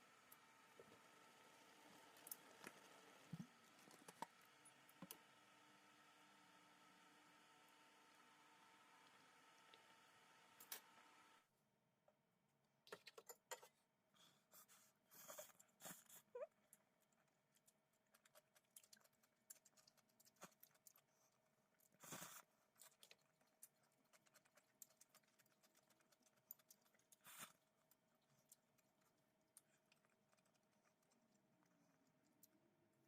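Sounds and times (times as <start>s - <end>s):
faint steady hum: 0.0s - 33.0s.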